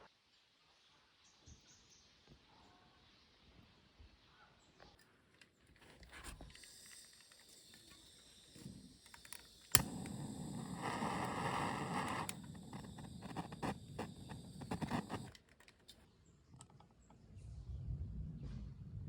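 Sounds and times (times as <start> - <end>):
sharp click: 6.3 - 16.0
clicks and rattling handling noises: 14.8 - 16.0.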